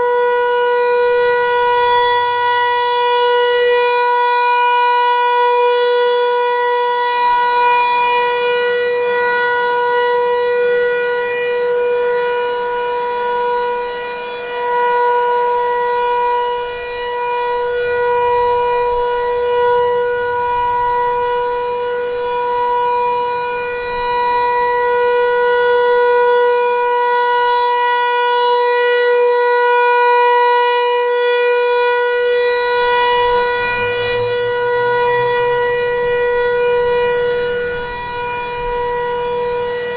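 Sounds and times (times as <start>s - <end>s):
outdoor warning siren steady tone: 0.0s - 39.9s.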